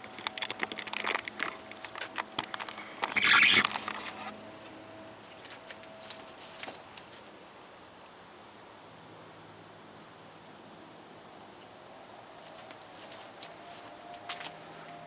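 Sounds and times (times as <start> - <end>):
plastic toy clicks and rattles: 0.0 - 4.2
scratchy rasp: 2.4 - 4.3.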